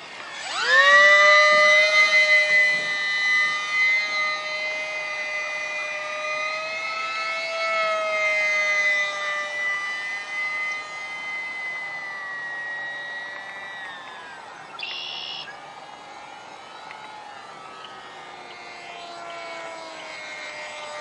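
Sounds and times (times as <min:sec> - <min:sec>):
electric motor propeller whine: 0:00.0 - 0:21.0.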